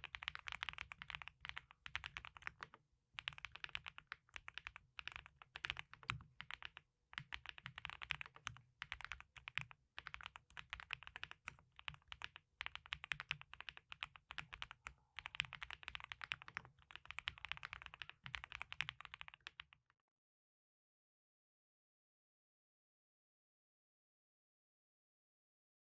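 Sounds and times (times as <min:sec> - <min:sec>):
keyboard typing: 0:00.0 - 0:19.8.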